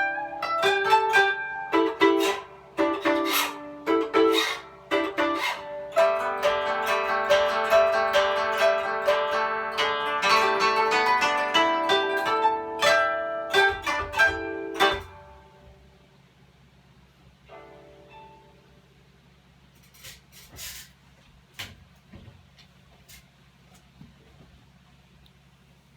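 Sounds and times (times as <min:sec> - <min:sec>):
plucked zither notes: 0:00.0 - 0:16.0, 0:17.5 - 0:18.9.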